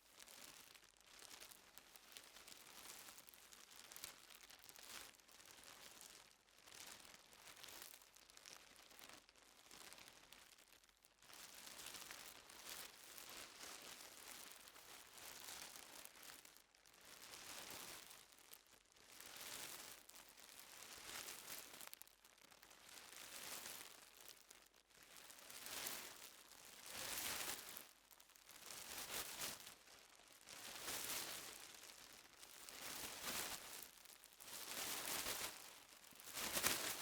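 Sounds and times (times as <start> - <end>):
plastic bag rustling: 30.8 - 37.0.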